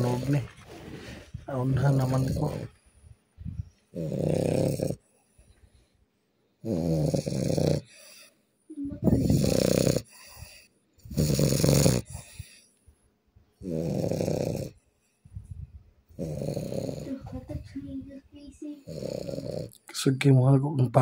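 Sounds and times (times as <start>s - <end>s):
person snoring loudly: 0.0s - 0.5s, 4.0s - 5.0s, 6.6s - 7.9s, 9.1s - 12.5s, 13.6s - 14.8s, 16.2s - 17.2s, 18.8s - 19.7s.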